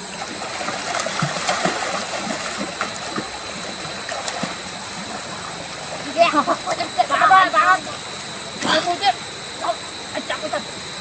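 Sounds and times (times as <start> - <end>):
shallow water sloshing and splashing: 0.0 - 8.7.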